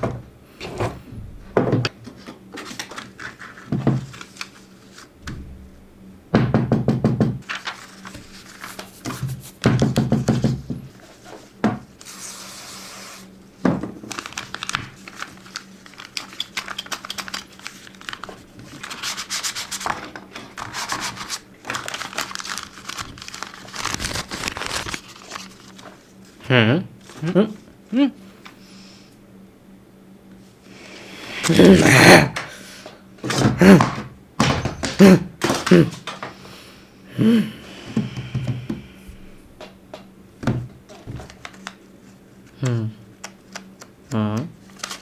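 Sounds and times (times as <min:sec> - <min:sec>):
knocks on hard surface: 0:06.3 - 0:07.4
paper rubbing and creasing: 0:07.5 - 0:09.6, 0:14.1 - 0:25.8.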